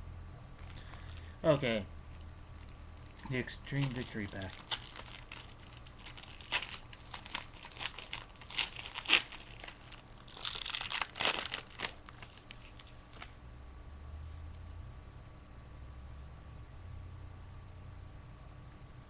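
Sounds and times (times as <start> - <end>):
foil wrapper tearing and crinkling: 2.6 - 13.3.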